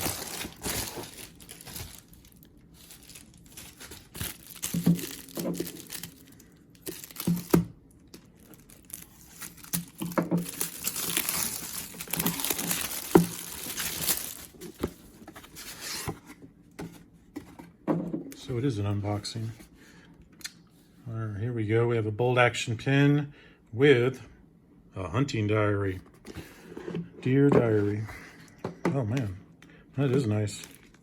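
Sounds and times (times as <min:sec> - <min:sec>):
envelope tearing and crinkling: 0:00.0 - 0:07.6, 0:08.4 - 0:14.8.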